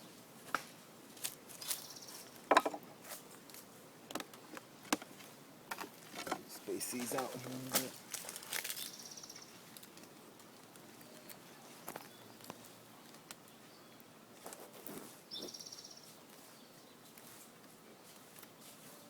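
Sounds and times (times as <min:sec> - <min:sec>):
wooden boxes clicking and knocking: 0:02.5 - 0:02.9, 0:04.1 - 0:07.9.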